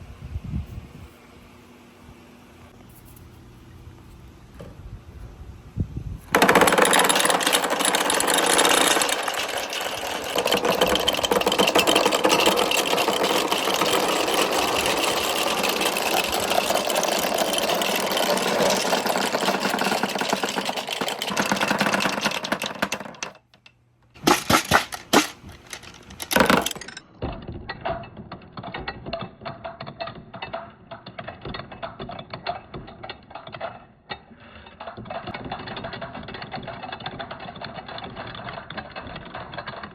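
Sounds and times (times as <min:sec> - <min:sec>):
balls rattling down marble run: 0:06.3 - 0:23.5, 0:24.2 - 0:27.0.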